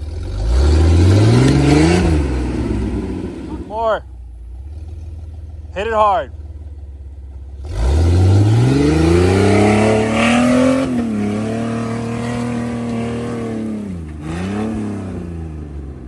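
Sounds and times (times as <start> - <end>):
engine revving hard: 0.0 - 4.0, 7.6 - 16.0.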